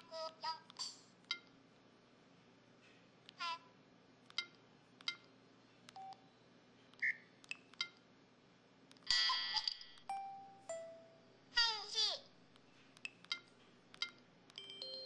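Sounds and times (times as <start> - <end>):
bright chime-like jingle: 14.6 - 15.0.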